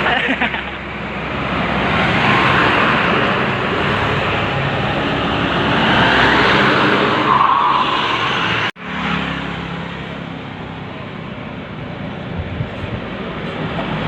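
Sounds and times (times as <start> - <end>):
vehicle passing close by: 0.9 - 10.3.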